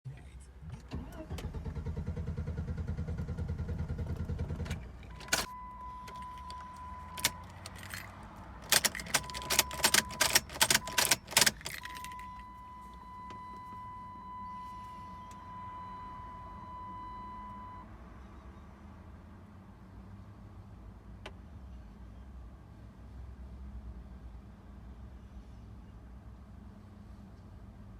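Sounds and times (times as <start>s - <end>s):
car engine pulsing: 1.0s - 15.6s
clicks: 4.7s - 12.5s
keys jangling: 5.2s - 12.4s.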